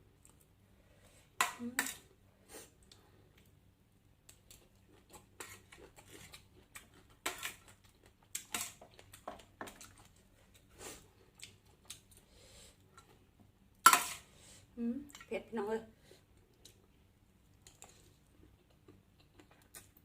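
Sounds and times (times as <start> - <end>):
person chewing food: 4.2 - 13.6, 16.2 - 20.0.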